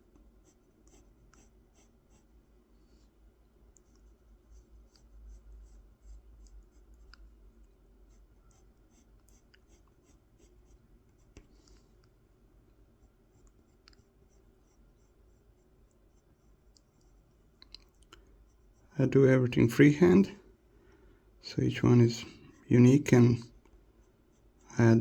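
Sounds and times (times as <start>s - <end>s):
pencil scratching on wood: 0.4s - 2.3s, 8.1s - 11.5s, 13.0s - 17.5s.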